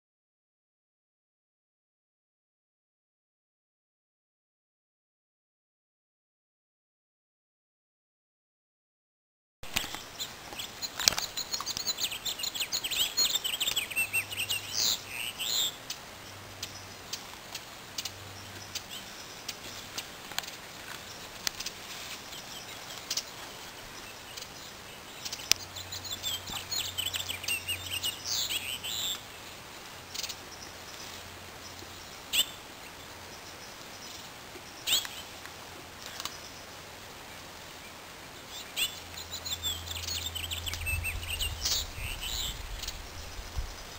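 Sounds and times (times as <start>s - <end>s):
outdoor hiss: 9.6s - 43.9s
birds singing and chirping: 9.7s - 43.9s.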